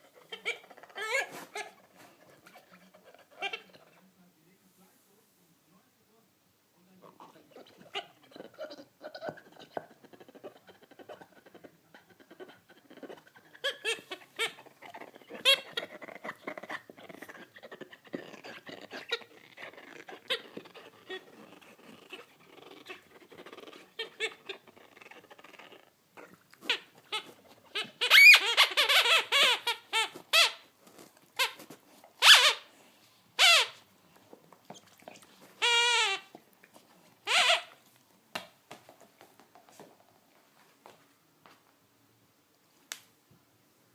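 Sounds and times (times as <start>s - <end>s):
dog gnawing toy: 0.0s - 4.1s, 7.0s - 32.8s, 33.4s - 40.4s
squeaky toy squeaks: 0.2s - 1.7s, 13.6s - 14.6s, 15.2s - 15.8s, 26.6s - 30.6s, 31.4s - 32.7s, 33.4s - 33.8s, 35.6s - 36.3s, 37.2s - 37.8s.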